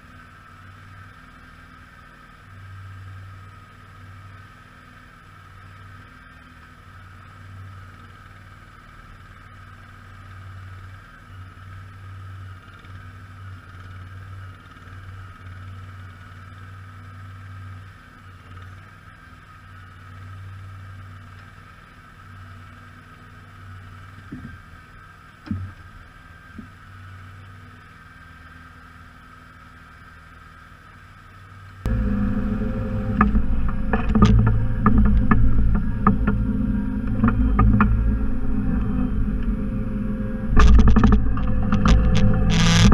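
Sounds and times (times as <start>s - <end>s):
garden tractor engine humming: 0.0s - 42.9s
sharp knocks: 31.9s - 42.9s.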